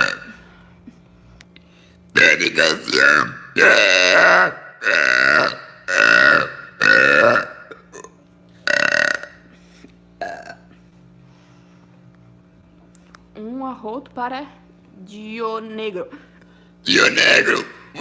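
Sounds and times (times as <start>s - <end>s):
woman burping: 0.0s - 0.5s, 2.9s - 9.5s, 10.2s - 10.8s.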